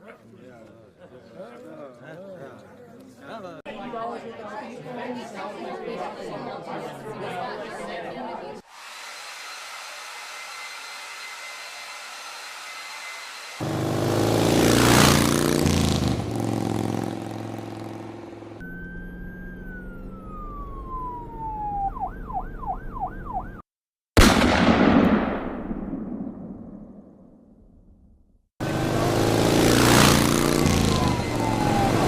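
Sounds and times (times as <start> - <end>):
engine revving loudly: 13.6 - 18.6, 28.6 - 32.0
electronic siren wailing: 18.6 - 23.6, 30.3 - 32.0
loud gunshot: 24.2 - 27.5.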